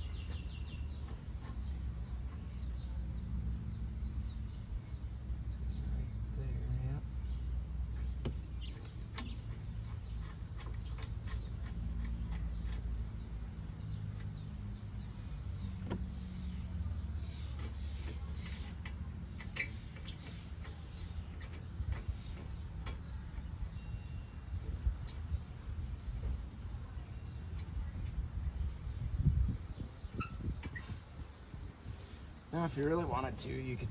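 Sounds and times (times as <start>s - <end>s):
hand tools clicking and tapping metal: 8.0s - 13.3s, 17.5s - 23.6s.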